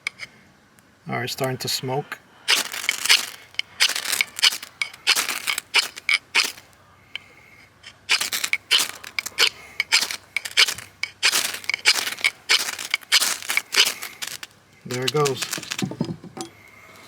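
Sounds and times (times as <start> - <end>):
ferro rod rasping scrapes: 2.5 - 6.7, 8.1 - 16.0.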